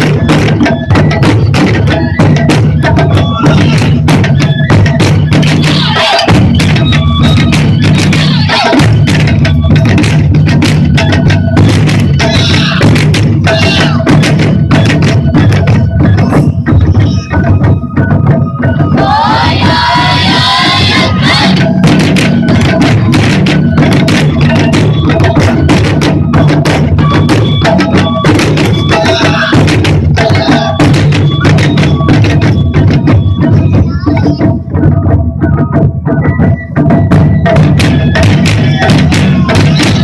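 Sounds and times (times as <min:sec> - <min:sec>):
taiko drums: 0:00.0 - 0:40.0
voices shouting together: 0:05.6 - 0:06.3, 0:08.1 - 0:08.8, 0:12.2 - 0:12.9, 0:13.5 - 0:14.1, 0:19.0 - 0:21.8, 0:29.0 - 0:30.8
steady high tone: 0:18.9 - 0:24.6.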